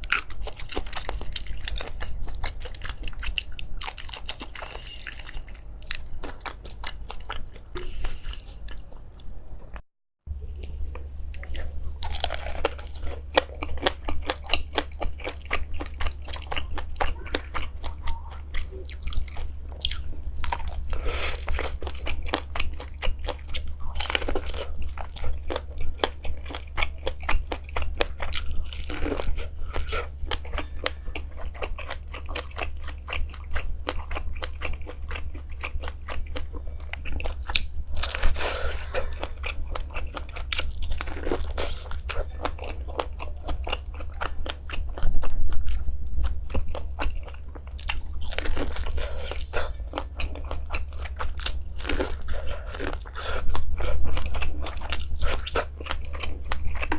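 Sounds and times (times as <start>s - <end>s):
crunching and chewing crisp food: 0.0s - 9.8s, 10.4s - 56.9s.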